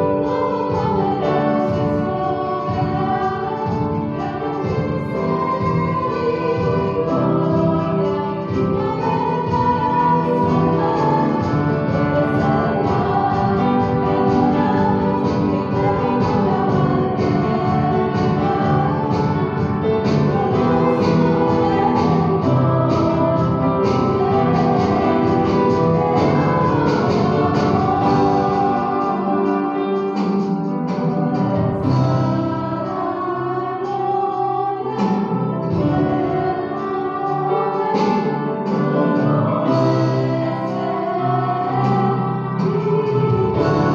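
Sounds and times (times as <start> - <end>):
singing over guitar: 0.0 - 43.9.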